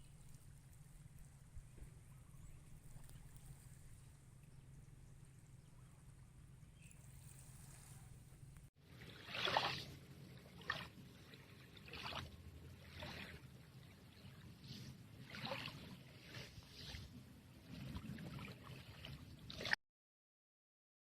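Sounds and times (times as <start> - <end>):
low steady rumble: 0.0 - 9.0
seawater splashing: 6.9 - 19.8.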